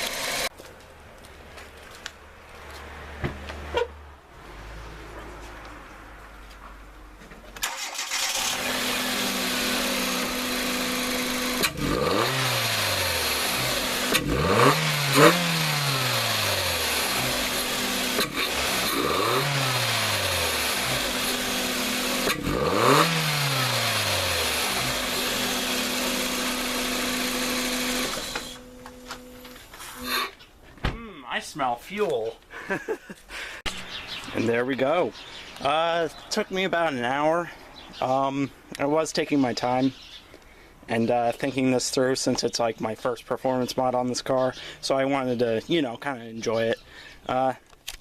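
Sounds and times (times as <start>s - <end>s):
car engine starting and revving: 0.0s - 0.5s, 7.6s - 30.2s.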